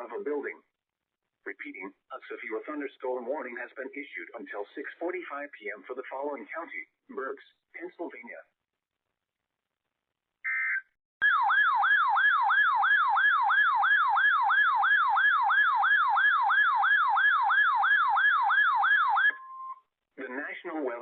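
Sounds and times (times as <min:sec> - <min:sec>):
electronic data tones: 0:10.5 - 0:11.0
siren-like alarm tone sweeping down: 0:10.5 - 0:19.4.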